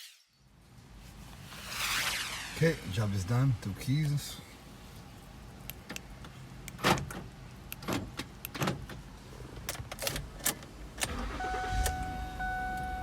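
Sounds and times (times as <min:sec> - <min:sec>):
low hum: 0:00.5 - 0:04.8
steady electronic tone: 0:01.4 - 0:03.3.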